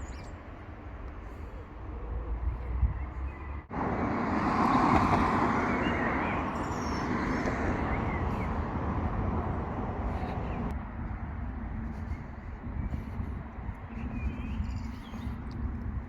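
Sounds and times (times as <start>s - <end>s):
car passing on road: 2.6s - 11.5s.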